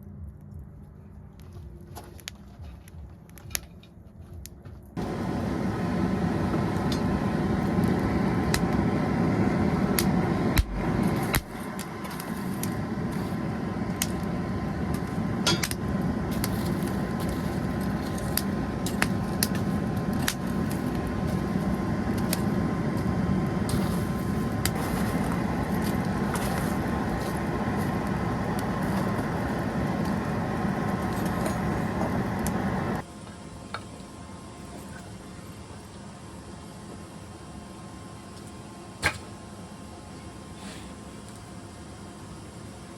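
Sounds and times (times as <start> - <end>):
mechanical roar with hum: 4.8 - 42.9.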